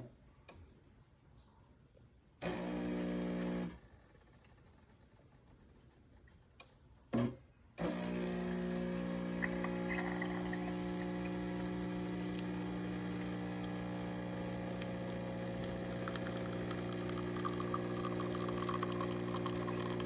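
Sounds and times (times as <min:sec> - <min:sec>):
espresso machine pump humming: 0:07.8 - 0:20.0
coffee trickling into cup: 0:09.4 - 0:20.0.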